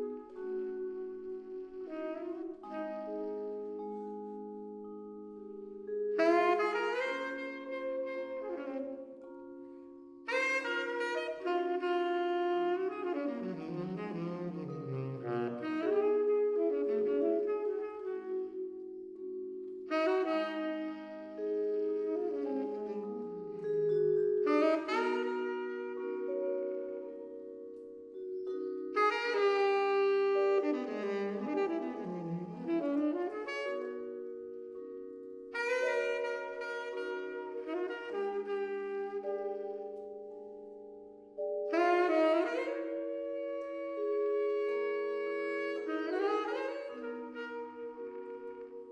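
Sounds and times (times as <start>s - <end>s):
saxophone melody: 0.0s - 48.9s
vibraphone chords: 0.0s - 48.9s.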